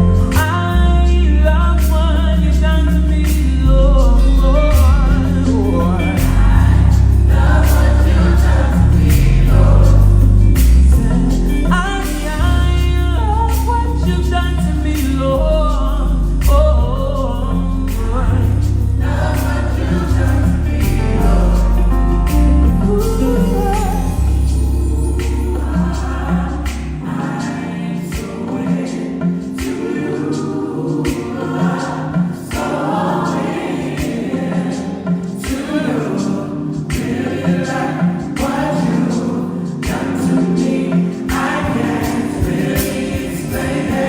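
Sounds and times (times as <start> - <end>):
electric bass low notes: 0.0 - 27.0
gospel choir singing: 0.0 - 44.0.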